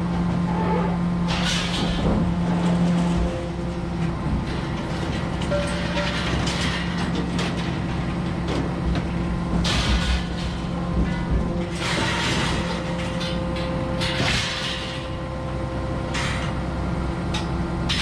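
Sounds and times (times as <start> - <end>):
loud clatter: 1.3 - 15.2.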